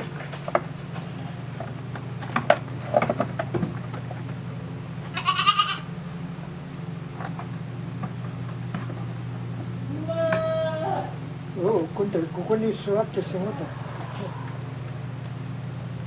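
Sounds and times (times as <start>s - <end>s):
low hum: 0.4s - 16.0s
goat bleating: 5.0s - 5.9s, 9.9s - 11.3s, 13.2s - 14.9s.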